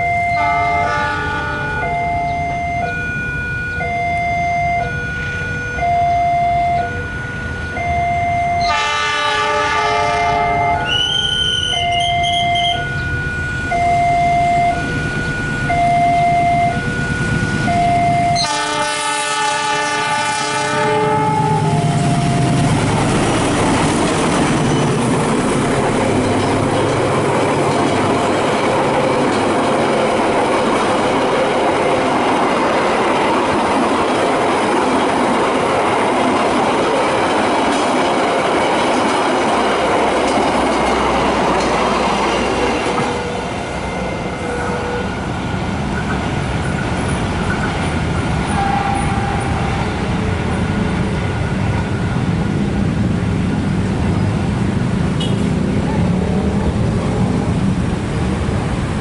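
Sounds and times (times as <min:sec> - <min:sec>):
diesel locomotive horn: 0:00.0 - 0:03.8, 0:04.8 - 0:23.5, 0:41.1 - 0:45.4, 0:48.4 - 0:50.0, 0:55.1 - 0:56.8
two-tone electronic warning signal: 0:00.0 - 0:23.4, 0:42.0 - 0:45.5, 0:48.4 - 0:52.2
train wheels clattering on rail: 0:21.6 - 0:43.6, 0:44.5 - 0:51.9.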